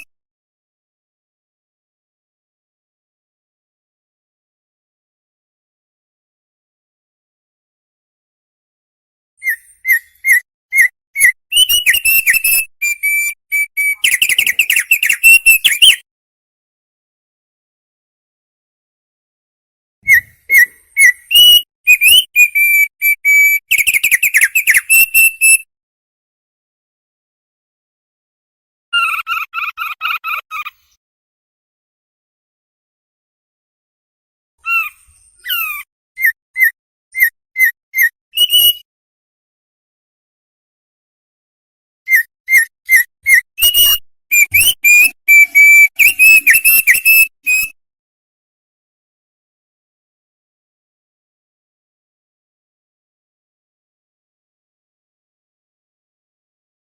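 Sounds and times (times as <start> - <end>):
songbird whistling: 9.4 - 16.0, 20.0 - 25.6, 34.8 - 38.8, 42.1 - 47.8.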